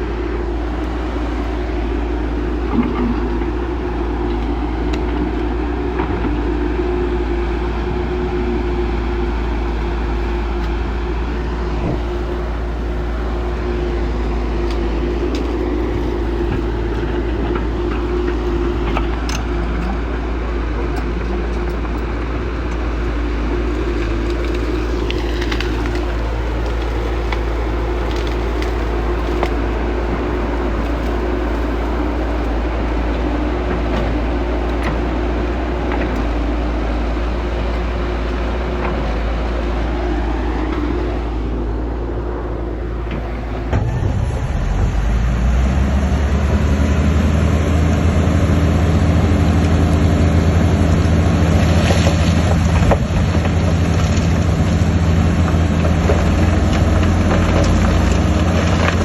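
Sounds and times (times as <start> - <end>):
heavy machinery diesel engines running: 0.0 - 59.0.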